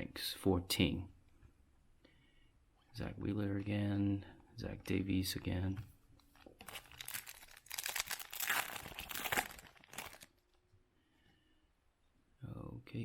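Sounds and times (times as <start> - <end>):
foil wrapper tearing and crinkling: 6.6 - 10.4.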